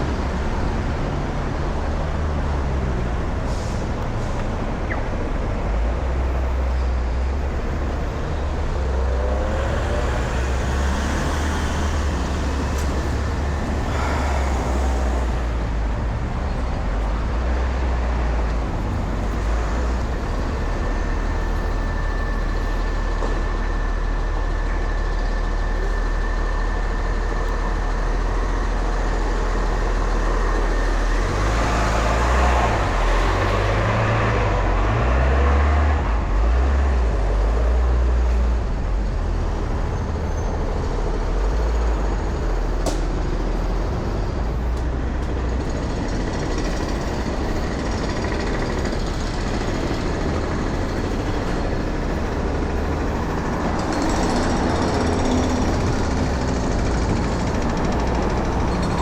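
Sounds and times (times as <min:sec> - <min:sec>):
city road traffic: 0:00.0 - 0:59.0
heavy vehicle engine rumble: 0:00.0 - 0:59.0.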